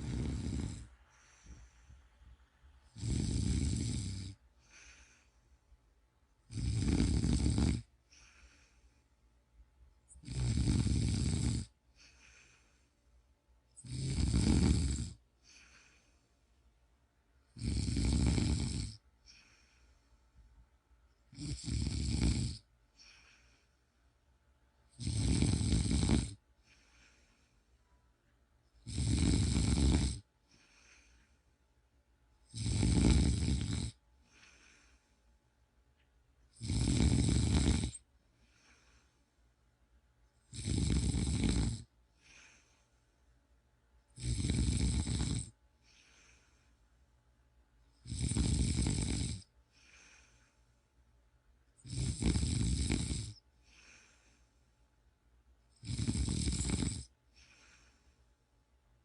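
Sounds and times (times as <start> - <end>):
person snoring: 0.0 - 1.7, 2.9 - 5.3, 6.5 - 8.8, 10.1 - 12.7, 13.8 - 16.1, 17.5 - 19.9, 21.3 - 23.7, 24.9 - 27.3, 28.8 - 31.2, 32.5 - 35.0, 36.5 - 39.1, 40.5 - 42.7, 44.2 - 46.6, 48.0 - 50.5, 51.8 - 54.4, 55.8 - 58.1.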